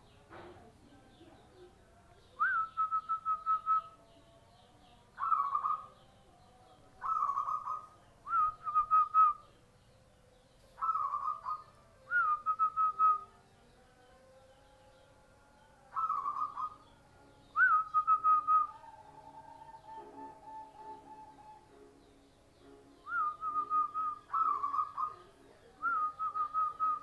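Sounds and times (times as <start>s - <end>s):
dove cooing: 5.2s - 5.9s, 7.0s - 8.0s, 10.8s - 11.7s, 15.9s - 16.8s, 18.0s - 21.6s, 23.1s - 27.0s.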